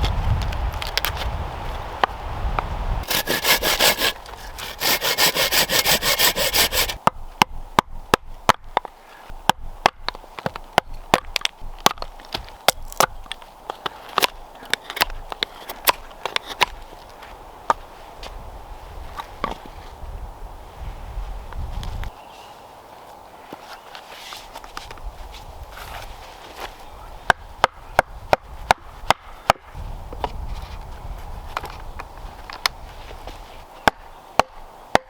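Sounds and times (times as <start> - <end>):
hand saw cutting wood: 3.0 - 7.0.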